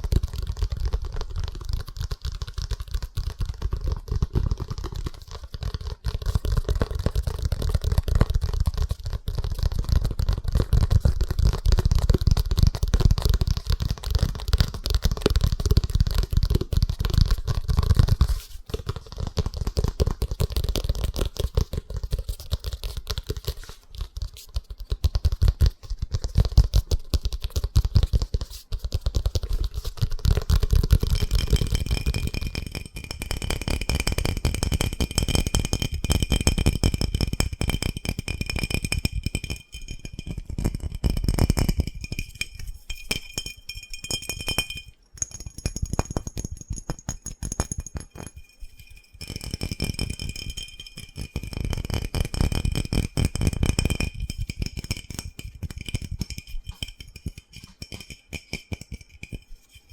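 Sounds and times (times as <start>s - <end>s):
fast tapping on hard object: 0.0s - 59.9s.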